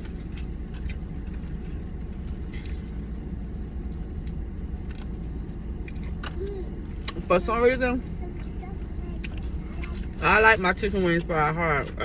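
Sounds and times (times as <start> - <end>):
crunching of chewing: 0.0 - 7.2.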